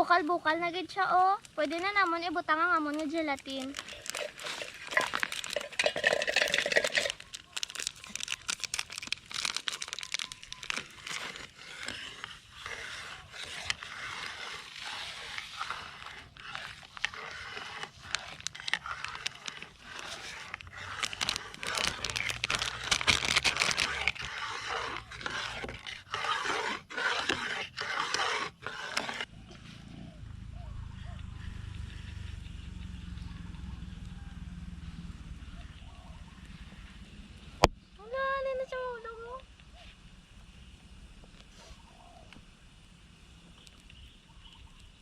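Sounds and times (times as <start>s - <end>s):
boiling liquid: 2.8s - 29.3s
scraping in a pot: 2.8s - 30.1s.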